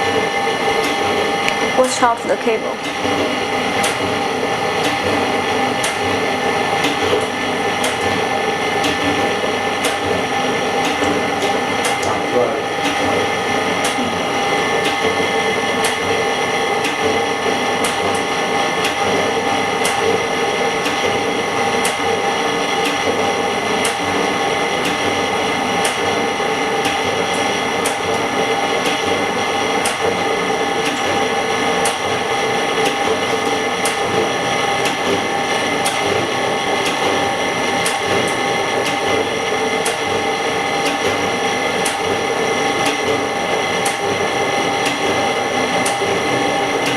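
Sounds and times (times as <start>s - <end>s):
machine whine: 0.0s - 46.9s
sharp machine tick: 3.8s - 4.1s, 5.8s - 6.0s, 41.8s - 42.1s, 45.8s - 46.1s.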